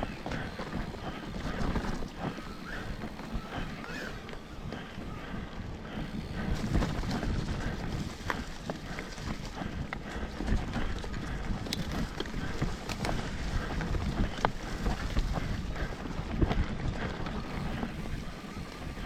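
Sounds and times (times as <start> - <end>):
bike rattling over rocks: 0.0 - 19.0
bike tyres rumbling on trail: 0.0 - 19.0
wind on microphone: 0.0 - 19.0.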